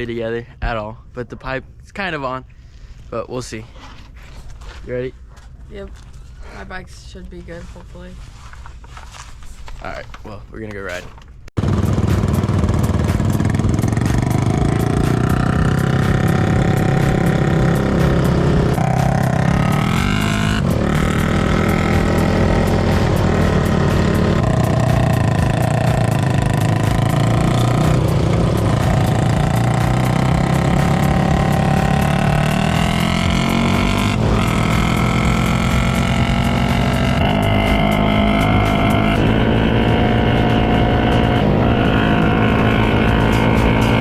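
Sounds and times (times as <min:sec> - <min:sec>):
quad engine shifting gears: 0:11.6 - 0:44.0.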